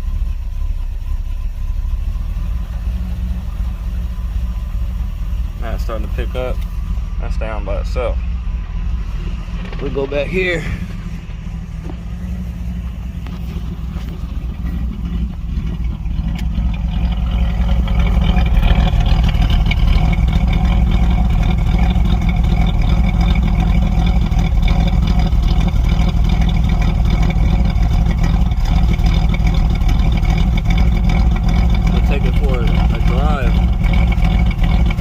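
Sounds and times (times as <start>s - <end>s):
car engine idling: 0.0s - 35.0s.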